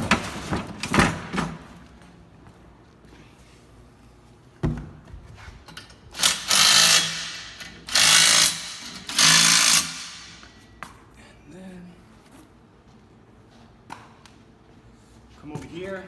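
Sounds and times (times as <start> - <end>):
impact driver tightening nuts: 6.2 - 10.5.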